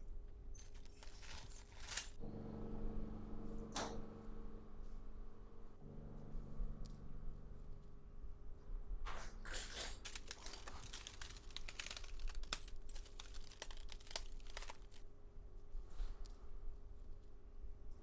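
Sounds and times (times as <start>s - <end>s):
crinkling and rustling wrapper: 0.5s - 2.2s, 9.5s - 15.2s.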